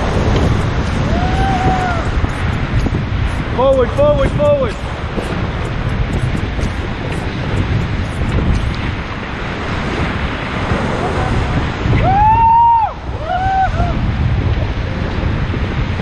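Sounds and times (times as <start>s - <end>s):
rushing river water: 0.0s - 16.0s
wind buffeting microphone: 0.0s - 16.0s
person shouting whoops: 1.1s - 2.1s, 12.0s - 14.0s.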